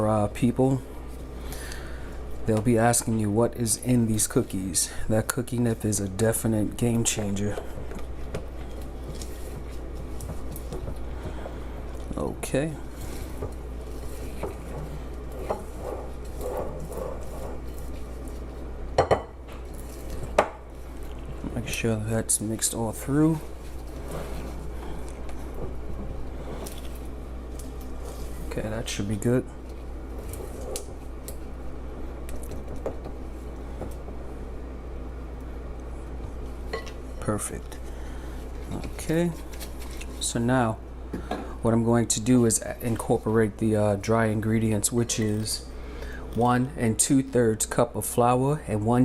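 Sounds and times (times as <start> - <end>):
steady low hum: 0.0 - 49.0
utensil stirring batter: 2.4 - 18.7
utensil scraping mixing bowl: 12.9 - 18.5.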